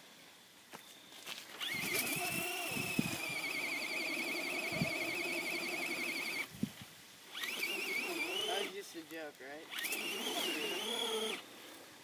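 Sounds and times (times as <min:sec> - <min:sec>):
electric motor whining: 0:01.6 - 0:06.5, 0:07.3 - 0:08.8, 0:09.7 - 0:11.4.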